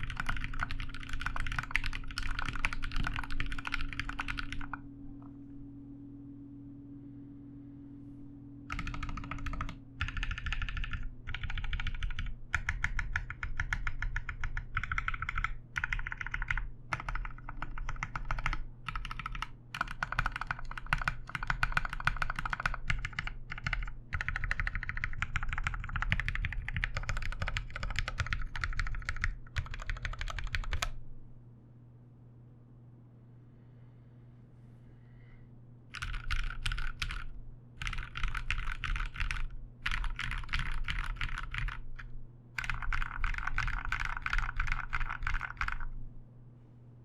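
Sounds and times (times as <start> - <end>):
fast typing on mechanical keyboard: 0.0 - 4.8, 8.7 - 31.0, 35.9 - 46.0.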